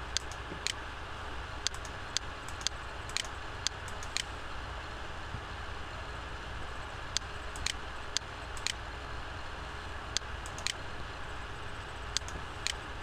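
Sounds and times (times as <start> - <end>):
low background hum: 0.0 - 13.0
computer mouse clicks: 0.1 - 0.8, 1.6 - 4.3, 7.2 - 8.8, 10.2 - 10.8, 12.1 - 12.8.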